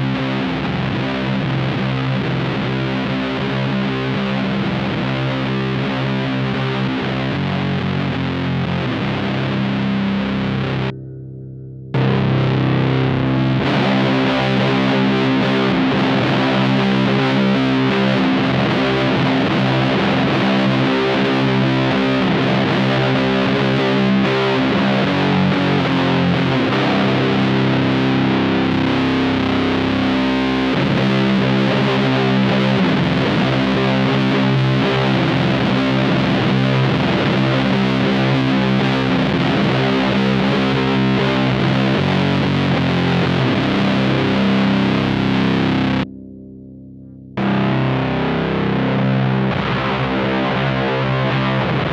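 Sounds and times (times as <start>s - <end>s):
distorted electric guitar chords: 0.0s - 51.9s.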